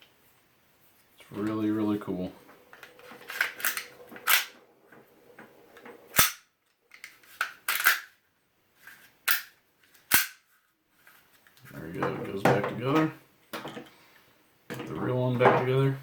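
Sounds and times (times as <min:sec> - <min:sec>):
pistol parts clicking into place: 0:02.7 - 0:04.6, 0:05.8 - 0:08.2, 0:09.2 - 0:10.5.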